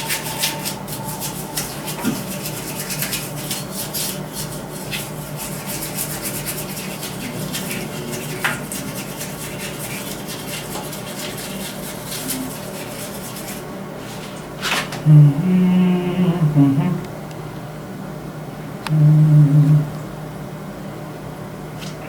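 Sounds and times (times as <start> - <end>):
brush scrubbing metal: 0.0 - 14.4.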